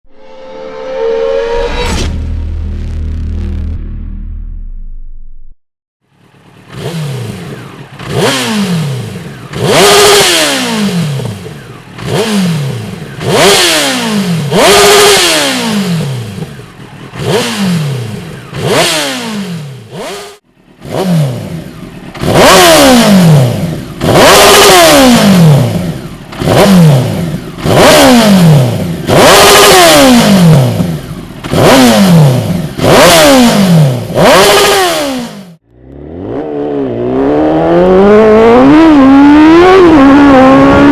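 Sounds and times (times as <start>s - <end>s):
motorcycle engine revving: 6.1s - 40.9s.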